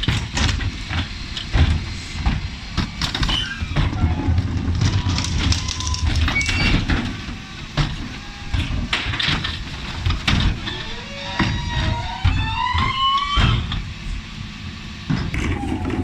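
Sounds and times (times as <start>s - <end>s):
garbage truck engine running: 0.0s - 16.0s
hydraulic bin lifter: 0.0s - 16.0s.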